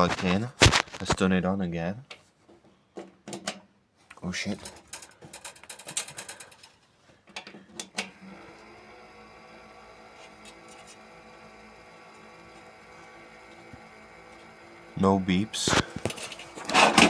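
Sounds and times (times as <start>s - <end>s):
clicks and knocks of handling: 2.1s - 8.1s
computer fans humming: 8.1s - 17.0s.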